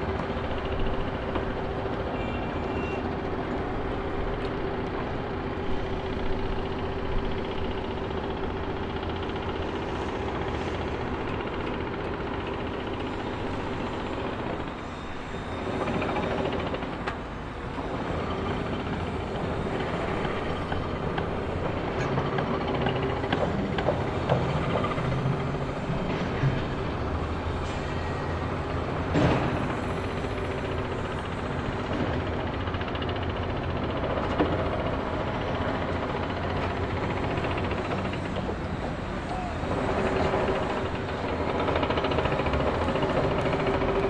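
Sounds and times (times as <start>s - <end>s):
machinery engine drone: 0.0s - 44.0s.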